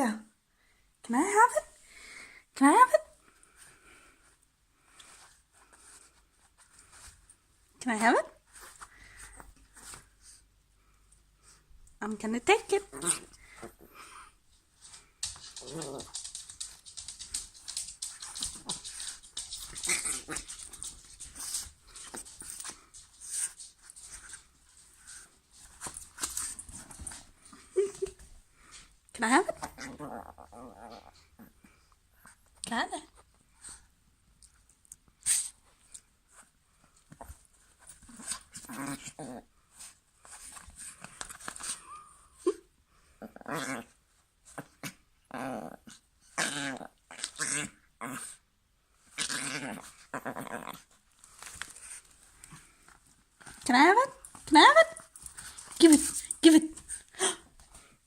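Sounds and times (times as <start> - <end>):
rustling and scuffling: 3.4 - 10.5, 13.2 - 30.0, 35.5 - 42.0, 50.8 - 58.0
dog grumbling and whining: 15.5 - 16.5, 29.6 - 31.8, 43.1 - 48.4, 49.0 - 51.0.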